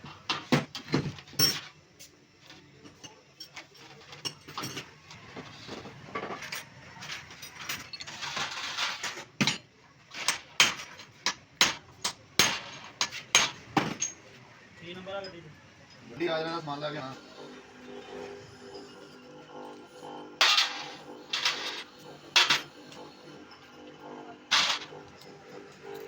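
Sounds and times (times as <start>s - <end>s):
metal tools clinking on workbench: 0.8s - 1.8s, 2.8s - 11.0s, 12.4s - 14.3s, 20.4s - 23.2s, 24.5s - 26.0s.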